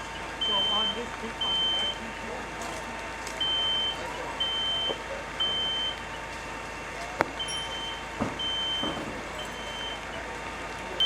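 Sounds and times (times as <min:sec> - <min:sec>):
high electronic alarm beeps: 0:00.0 - 0:02.4, 0:03.4 - 0:06.0, 0:07.4 - 0:10.1.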